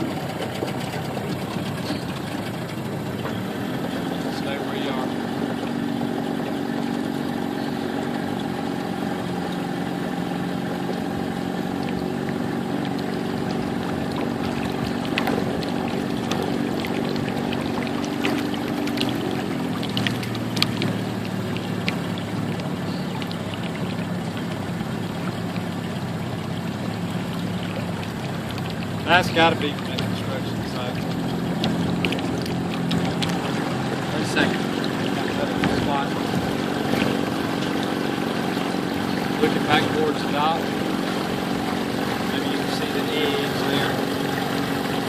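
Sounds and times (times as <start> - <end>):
motorboat engine running: 0.0 - 45.0
water washing along hull: 0.0 - 45.0.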